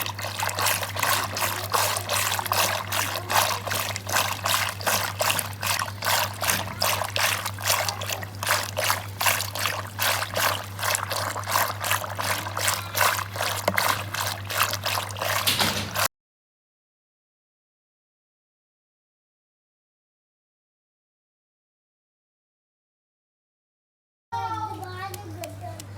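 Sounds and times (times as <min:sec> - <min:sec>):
steady low hum: 0:00.0 - 0:15.5
butter bubbling and crackling: 0:00.0 - 0:16.1.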